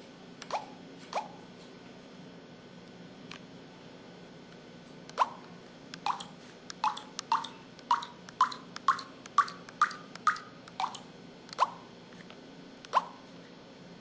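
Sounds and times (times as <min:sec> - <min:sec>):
water-drop plop blips: 0:06.1 - 0:11.8.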